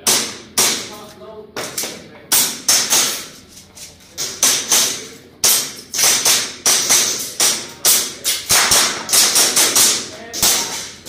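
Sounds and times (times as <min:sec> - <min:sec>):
airsoft pistol shots: 0:04.4 - 0:10.9.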